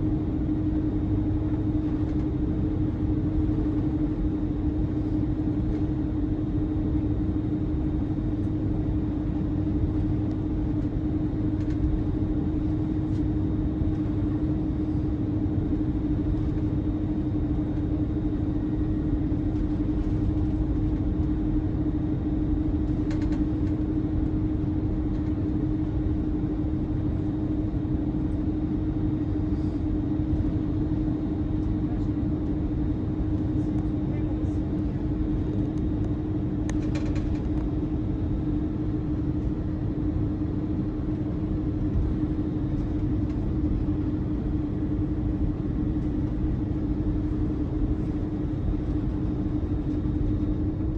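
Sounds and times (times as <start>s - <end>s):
constant cabin hum: 0.0s - 50.9s
jet engines rumbling: 0.1s - 50.9s
airflow along fuselage: 0.5s - 37.5s, 38.4s - 50.9s.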